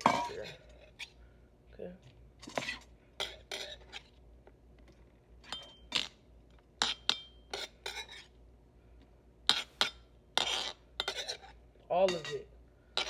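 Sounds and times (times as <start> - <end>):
metal utensil scraping a bowl: 0.0 - 1.2, 2.4 - 4.2, 5.4 - 6.2, 6.8 - 8.4, 9.5 - 13.0.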